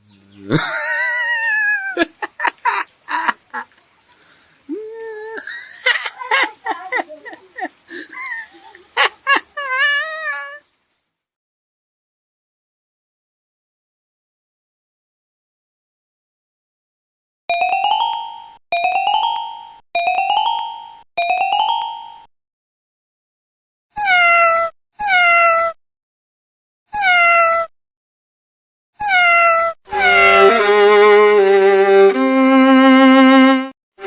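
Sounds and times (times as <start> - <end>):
cat meowing: 24.0 - 25.8, 27.0 - 27.7, 29.0 - 30.7
bowed string melody: 29.9 - 33.7.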